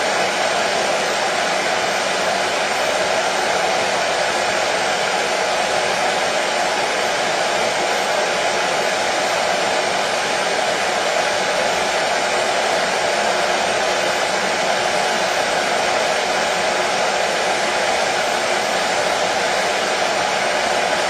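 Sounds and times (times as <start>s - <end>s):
hair dryer running: 0.0s - 21.0s.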